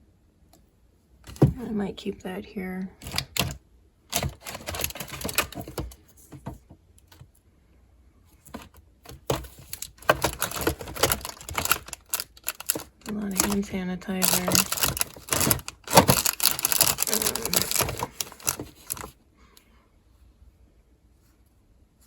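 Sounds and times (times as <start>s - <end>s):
toiletry bottles clicking and clattering: 3.0s - 6.0s, 8.6s - 19.1s.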